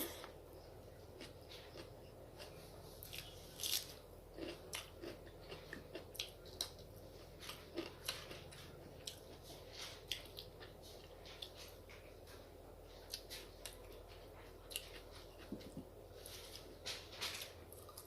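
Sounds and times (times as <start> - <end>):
person chewing with mouth smacks: 1.2 - 12.0.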